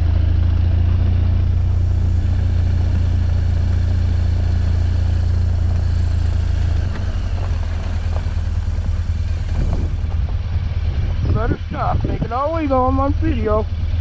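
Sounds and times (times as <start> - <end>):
motorcycle running: 0.0 - 14.0
wind rumble on microphone: 6.6 - 14.0.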